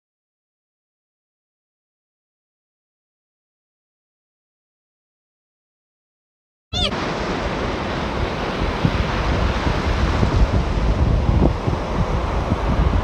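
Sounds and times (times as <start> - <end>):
sea surf washing on beach: 6.8 - 13.0
wind buffeting microphone: 6.9 - 13.0.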